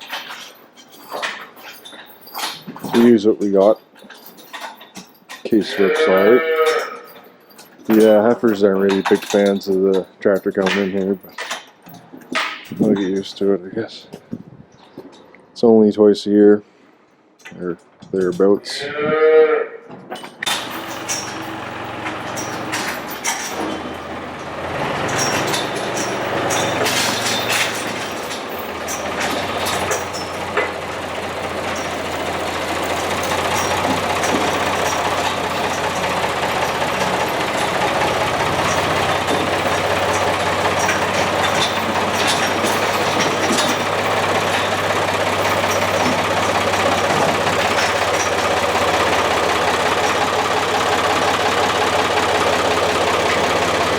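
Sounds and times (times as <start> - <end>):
clicks and rattles: 0.0 - 15.4, 20.0 - 53.9
tractor engine running: 20.4 - 53.9.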